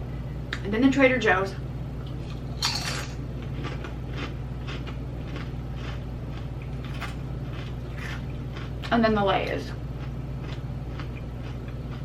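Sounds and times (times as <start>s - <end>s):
steady low hum: 0.0s - 12.0s
chewing potato chips crunching: 2.0s - 9.0s, 9.9s - 12.0s.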